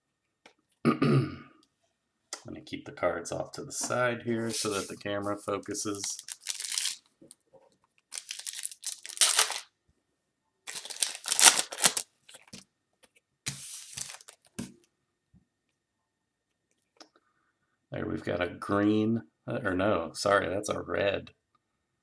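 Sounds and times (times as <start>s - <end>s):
wrapper tearing and crinkling: 5.9s - 7.0s, 8.1s - 9.6s, 10.7s - 12.6s, 13.5s - 14.6s.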